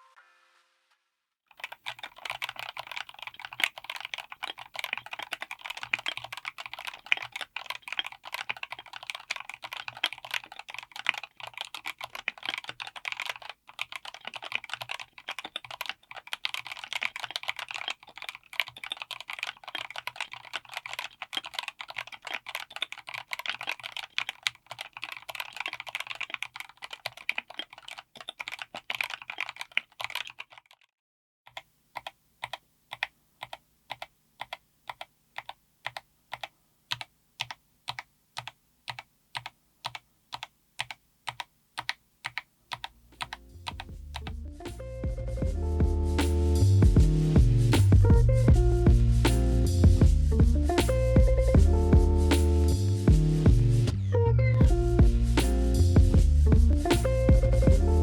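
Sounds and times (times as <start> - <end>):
mechanical keyboard typing: 1.5 - 30.9, 31.5 - 44.4.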